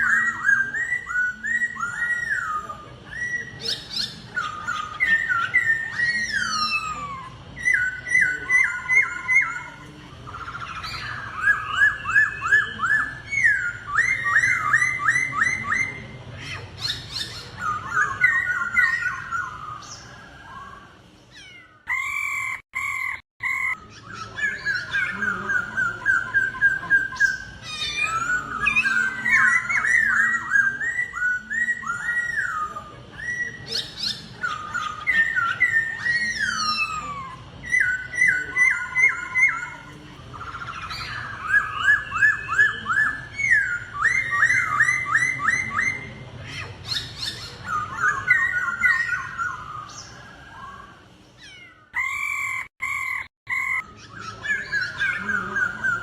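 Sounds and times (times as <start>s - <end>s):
bird singing whistled notes: 0.0s - 16.1s, 21.4s - 46.2s.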